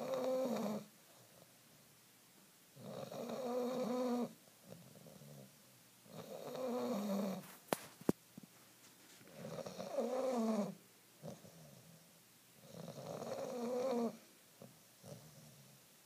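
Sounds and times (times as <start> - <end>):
dog snoring: 0.0 - 1.4, 2.8 - 7.5, 9.3 - 15.8.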